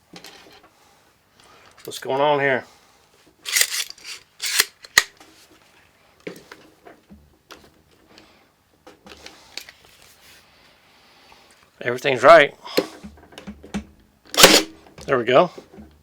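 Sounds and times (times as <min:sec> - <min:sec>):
rustling of plastic and staples: 0:03.4 - 0:07.9.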